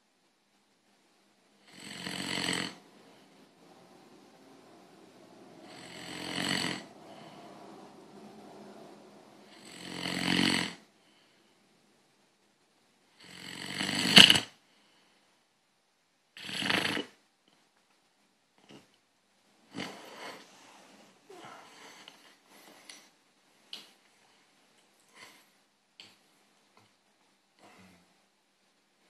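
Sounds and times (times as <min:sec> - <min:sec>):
loud snoring: 0:01.6 - 0:10.9, 0:13.2 - 0:14.5, 0:16.4 - 0:17.2.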